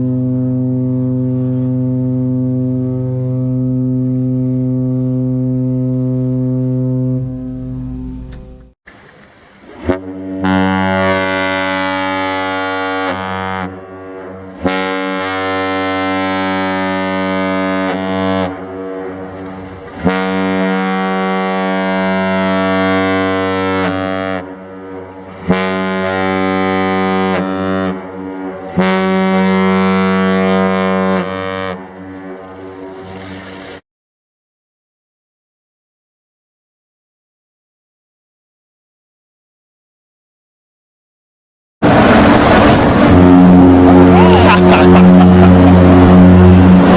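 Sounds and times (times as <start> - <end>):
deep multi-tone horn blasts: 0.0 - 8.7, 9.8 - 33.4, 41.8 - 46.9.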